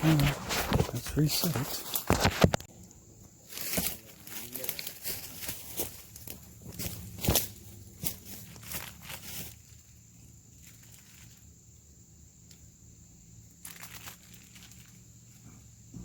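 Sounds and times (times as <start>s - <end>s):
faint rustling and scuffing: 0.0s - 2.7s, 3.5s - 9.9s.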